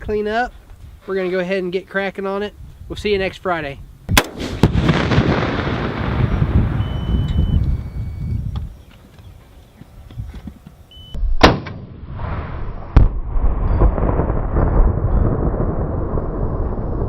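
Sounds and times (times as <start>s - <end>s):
heavy blast with rolling rumble: 4.0s - 8.4s, 11.3s - 17.0s
sharp gunshot: 4.1s - 6.0s, 11.3s - 13.3s.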